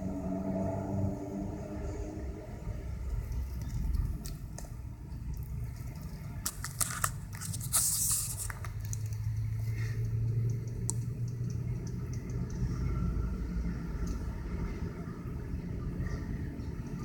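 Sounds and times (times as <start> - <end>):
low hum: 0.0 - 17.0
rabbits chewing grass: 3.0 - 13.0.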